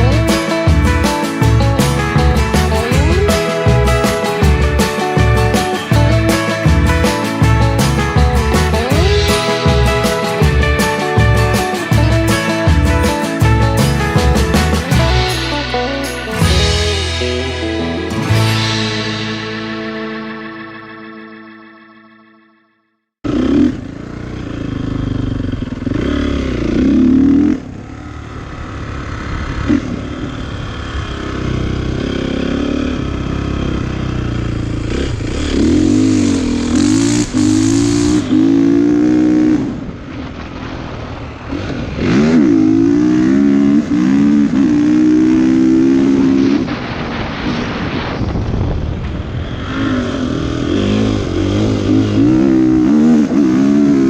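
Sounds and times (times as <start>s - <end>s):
dirt bike engine revving: 23.2s - 40.7s, 41.4s - 47.6s, 49.3s - 54.0s.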